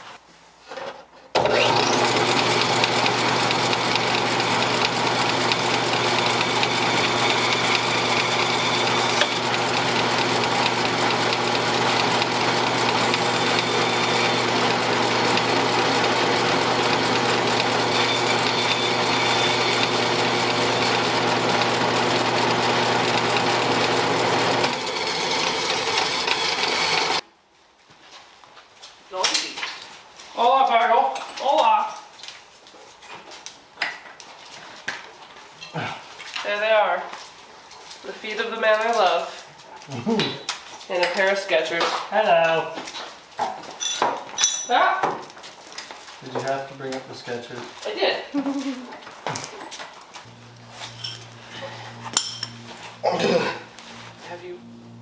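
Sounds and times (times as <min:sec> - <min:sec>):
motor running loudly: 0:01.4 - 0:27.2.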